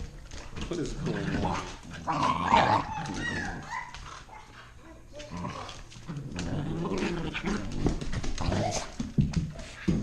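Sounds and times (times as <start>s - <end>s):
dogs scuffling: 0.0s - 10.0s
dogs growling: 0.8s - 4.4s, 5.2s - 9.0s.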